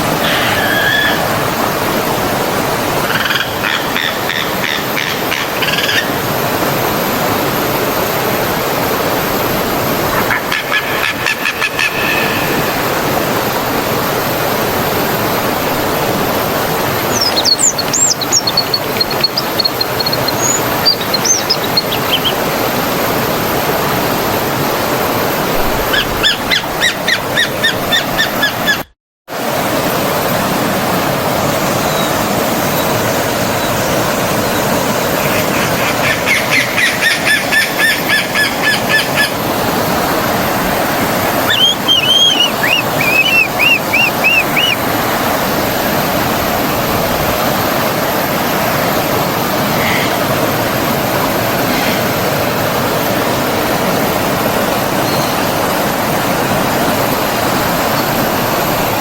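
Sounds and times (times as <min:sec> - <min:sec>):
stream water running: 0:00.0 - 0:59.0
birds whistling and trilling: 0:00.2 - 0:01.3, 0:17.0 - 0:22.6, 0:35.3 - 0:39.3, 0:41.4 - 0:44.8, 0:49.7 - 0:50.3, 0:55.0 - 0:55.4.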